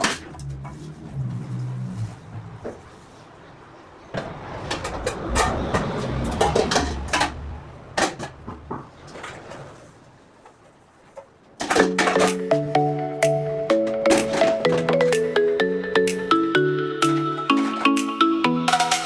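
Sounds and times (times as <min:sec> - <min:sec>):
background music with held notes: 0:11.7 - 0:19.0.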